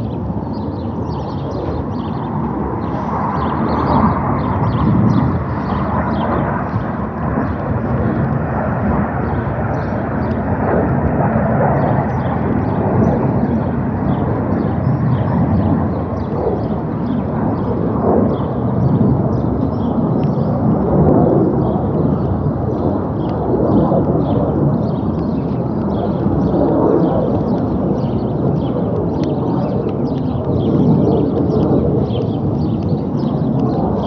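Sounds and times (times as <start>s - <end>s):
jet engine roar: 0.0s - 34.0s.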